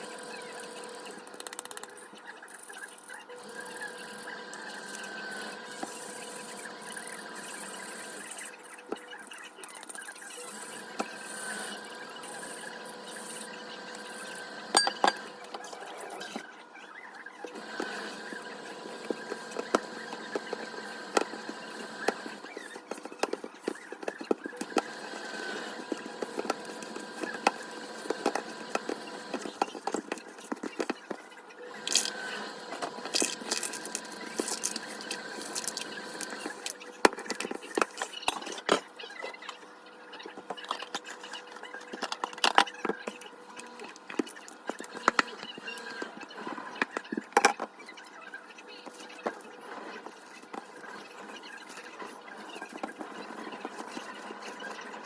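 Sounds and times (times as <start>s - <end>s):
small electric motor whining: 0.0s - 47.6s
objects clicking and clinking: 32.9s - 38.9s.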